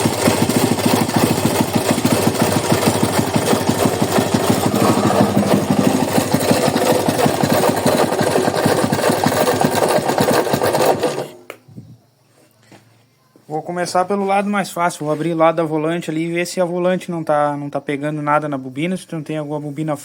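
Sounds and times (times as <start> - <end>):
motorcycle engine knocking: 0.0 - 11.2.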